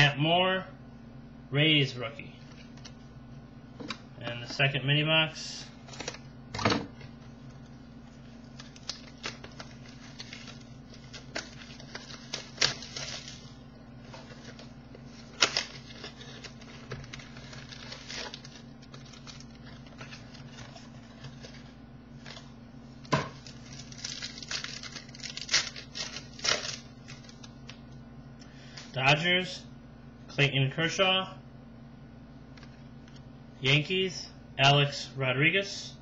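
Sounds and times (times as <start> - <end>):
steady low hum: 0.0 - 36.0
pack wrappers rustling and tearing: 7.4 - 27.8.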